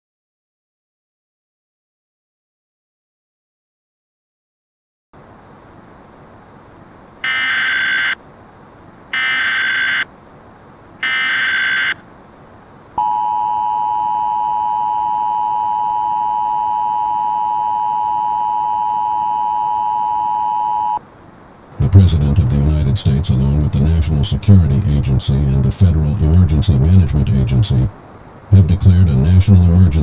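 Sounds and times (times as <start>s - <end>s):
short data tone bursts: 13.0s - 21.0s
two-tone attention signal: 13.0s - 21.0s.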